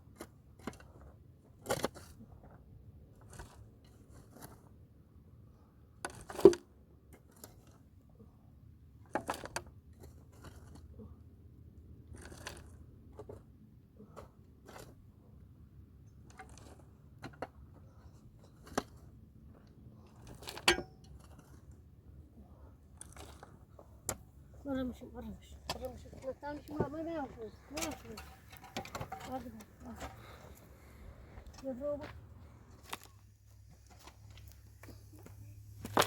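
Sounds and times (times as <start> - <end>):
faint scraping: 22.4 - 36.0.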